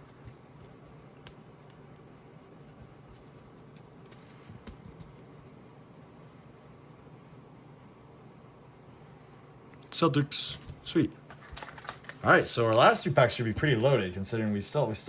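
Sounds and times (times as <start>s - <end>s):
trading cards being handled: 0.0s - 5.2s, 10.6s - 15.0s.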